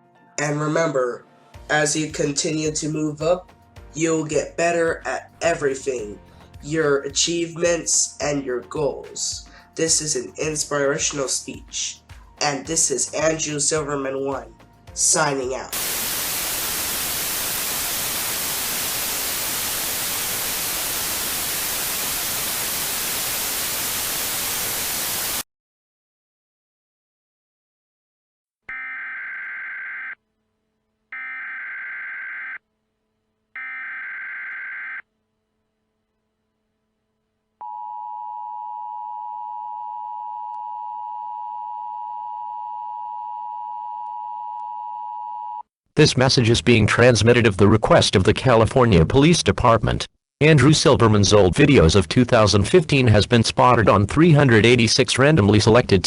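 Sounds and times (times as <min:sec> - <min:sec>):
white noise static hiss: 0:15.8 - 0:25.4.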